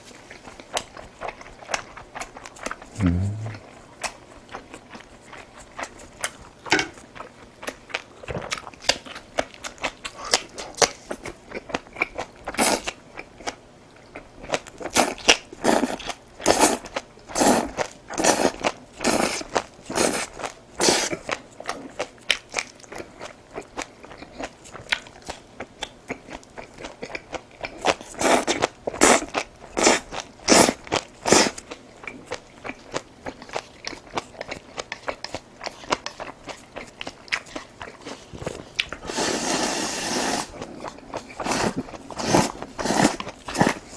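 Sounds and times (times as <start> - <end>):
crunchy food chewing: 0.2 - 43.9.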